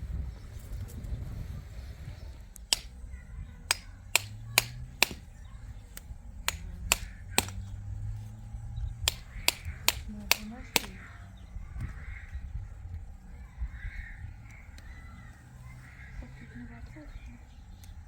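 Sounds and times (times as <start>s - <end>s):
sharp short clicks: 2.6s - 3.0s, 3.6s - 7.8s, 9.0s - 11.1s.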